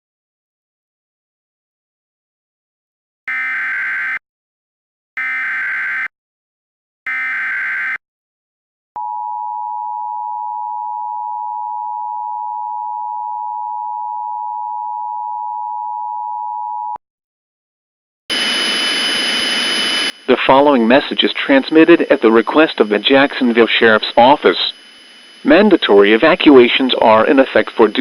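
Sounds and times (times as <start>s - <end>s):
digital data bursts: 18.3s - 28.0s.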